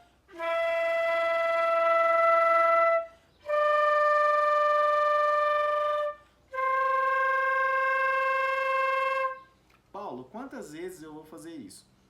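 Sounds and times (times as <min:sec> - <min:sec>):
flute playing long notes: 0:00.0 - 0:09.6.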